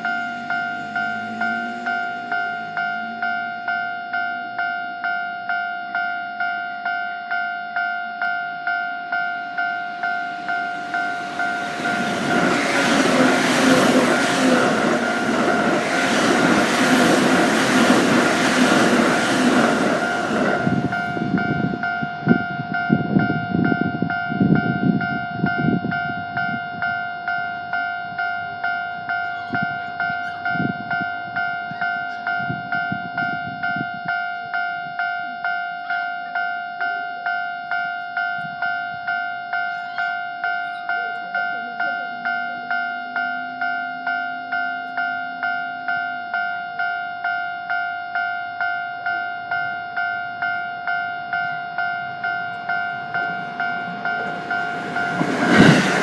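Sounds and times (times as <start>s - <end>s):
level crossing bell ringing: 0.0s - 56.0s
train passing: 0.0s - 56.0s
train wheels thumping: 10.3s - 22.4s, 52.4s - 56.0s.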